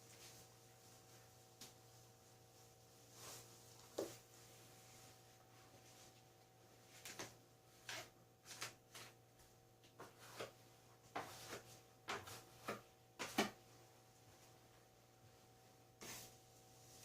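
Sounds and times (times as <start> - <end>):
putty knife scraping on wall: 7.1 - 9.2.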